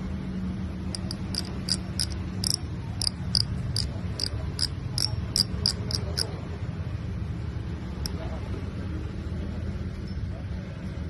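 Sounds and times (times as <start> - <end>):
fishing reel clicker ticking: 1.0 - 6.3.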